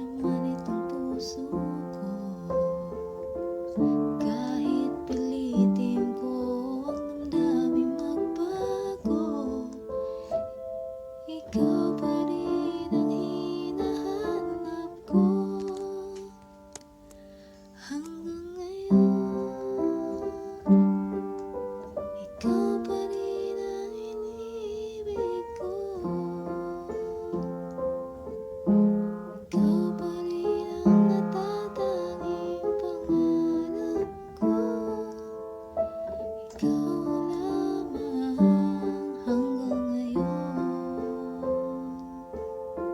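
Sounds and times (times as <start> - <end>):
person singing softly: 0.0 - 42.9
piano playing slow chords: 0.0 - 42.9.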